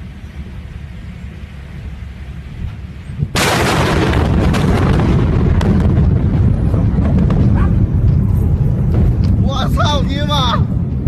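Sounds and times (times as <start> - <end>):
loud heavy rumble: 1.8 - 11.0
explosion blast: 3.3 - 10.9.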